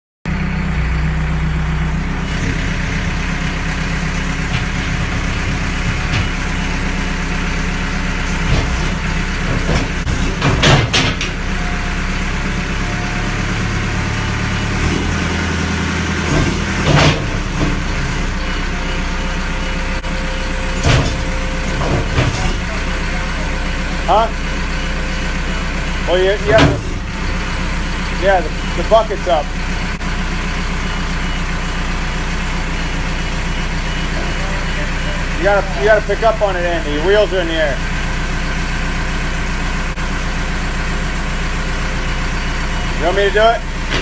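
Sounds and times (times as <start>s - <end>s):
backhoe diesel engine running: 0.3s - 44.0s
metal clanks and knocks: 4.3s - 7.0s, 8.2s - 11.6s, 16.2s - 18.9s, 20.7s - 24.0s, 26.4s - 27.6s.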